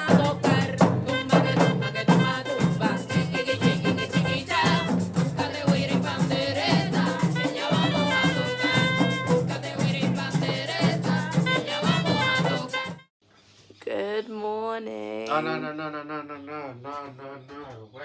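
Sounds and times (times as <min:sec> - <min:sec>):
person singing: 0:00.0 - 0:12.9
upbeat song with steady beat: 0:00.0 - 0:13.1
shaker rattling: 0:02.3 - 0:12.8.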